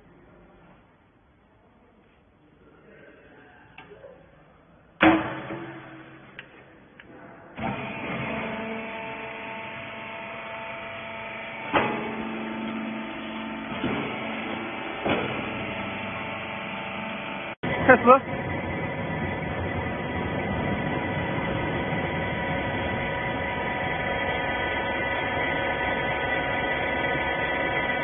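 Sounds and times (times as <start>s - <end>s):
hydraulic power unit humming: 5.0s - 28.0s.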